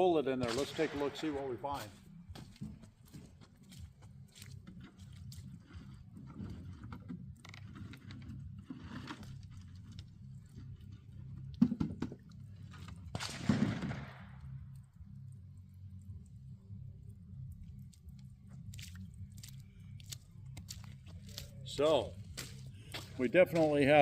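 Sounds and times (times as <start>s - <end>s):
steady low hum: 0.0s - 24.0s
plastic jug knocks and rustles: 11.6s - 12.3s.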